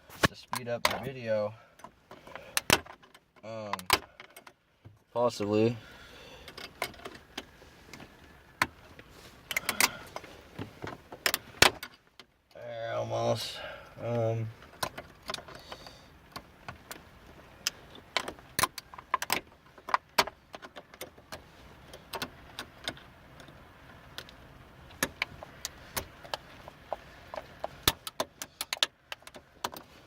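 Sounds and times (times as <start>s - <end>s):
tools clicking and scraping on metal: 24.2s - 30.0s.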